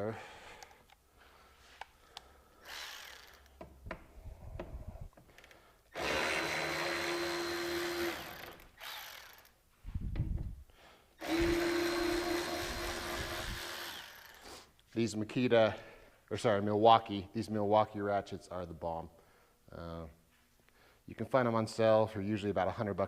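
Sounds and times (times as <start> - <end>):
cordless electric ratchet running: 2.6 - 3.6, 6.0 - 9.5, 11.2 - 14.4.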